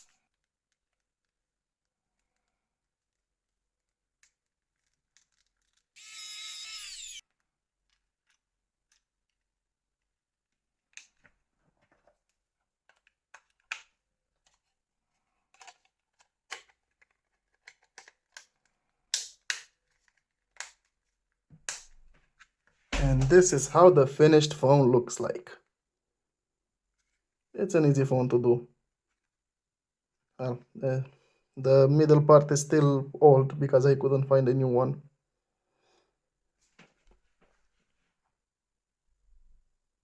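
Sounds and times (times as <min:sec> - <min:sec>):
small plastic clicks and snaps: 0:15.5 - 0:20.9.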